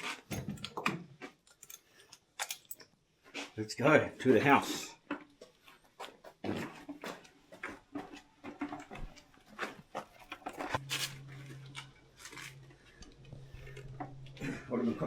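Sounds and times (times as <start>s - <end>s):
low steady hum: 8.4s - 15.0s.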